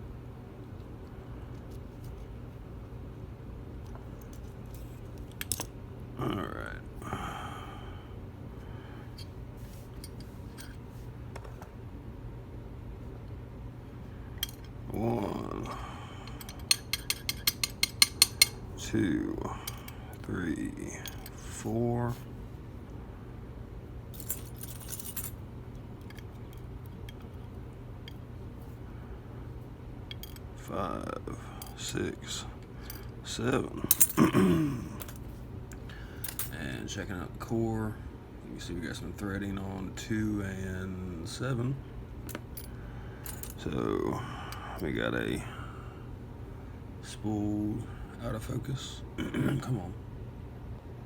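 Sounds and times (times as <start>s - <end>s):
low steady hum: 0.0s - 51.0s
small metal parts clinking: 3.8s - 5.7s, 9.9s - 10.8s, 14.4s - 15.4s, 16.2s - 18.6s, 24.1s - 25.4s, 30.1s - 30.5s, 33.9s - 34.3s, 35.0s - 35.3s, 36.2s - 36.5s, 42.3s - 43.7s
metal lock parts clicking: 4.2s - 5.7s, 16.3s - 18.6s
short vocal sound: 33.8s - 35.0s.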